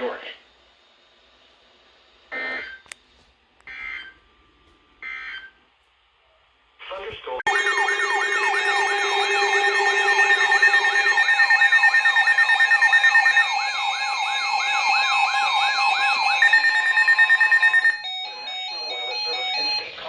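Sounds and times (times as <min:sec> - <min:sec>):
electronic siren alert sweeps: 0:07.5 - 0:20.0
steady held alert tones: 0:07.5 - 0:20.0.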